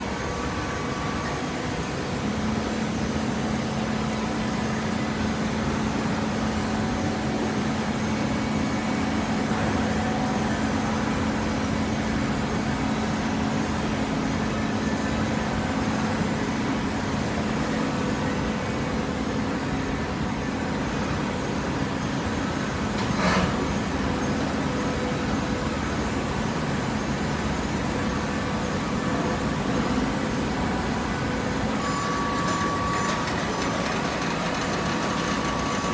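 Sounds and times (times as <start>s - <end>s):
baler pump motor humming: 22.1s - 35.9s
machine noise: 29.4s - 35.9s.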